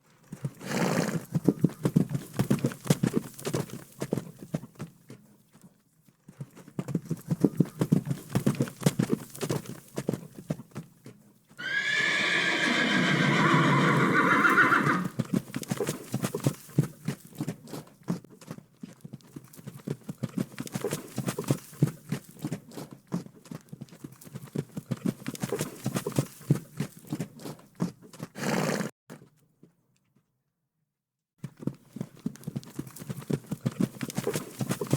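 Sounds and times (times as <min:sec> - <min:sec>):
horse hooves clip-clopping: 0:00.0 - 0:30.3, 0:31.4 - 0:34.9
horse whinnying: 0:11.6 - 0:15.2, 0:28.4 - 0:28.9.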